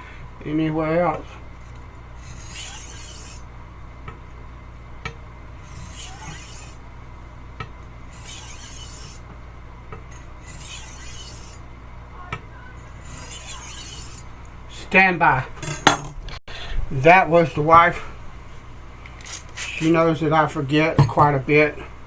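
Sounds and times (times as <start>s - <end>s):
knife grinding on sharpening stone: 1.7s - 3.5s, 5.6s - 6.8s, 8.0s - 9.3s, 10.1s - 11.7s, 12.8s - 14.3s.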